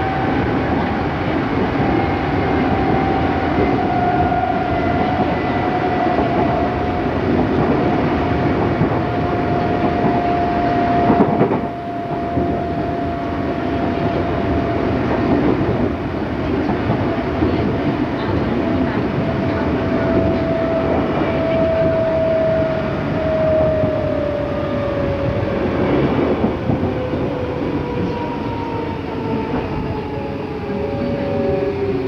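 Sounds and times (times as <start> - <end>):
train motor whine: 0.0 - 15.9
loud train clatter: 0.0 - 32.0
train wheels rumbling on rails: 0.0 - 32.0.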